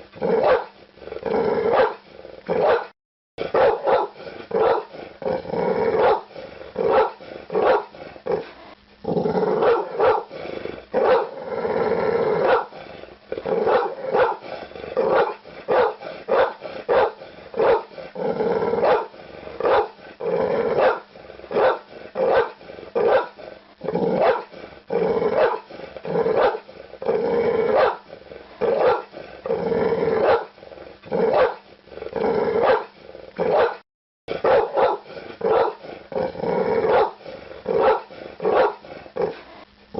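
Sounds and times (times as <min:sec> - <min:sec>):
dog barking: 0:00.4 - 0:00.7, 0:01.7 - 0:02.0, 0:02.6 - 0:02.9, 0:03.5 - 0:04.9, 0:06.0 - 0:08.0, 0:09.6 - 0:10.3, 0:11.0 - 0:11.4, 0:12.4 - 0:12.7, 0:13.6 - 0:14.4, 0:15.0 - 0:17.9, 0:18.8 - 0:20.0, 0:20.8 - 0:23.4, 0:24.2 - 0:24.5, 0:25.4 - 0:25.7, 0:26.3 - 0:26.6, 0:27.7 - 0:28.0, 0:28.7 - 0:29.1, 0:30.2 - 0:30.5, 0:31.3 - 0:31.6, 0:32.6 - 0:32.9, 0:33.5 - 0:35.8, 0:36.9 - 0:37.2, 0:37.8 - 0:38.8.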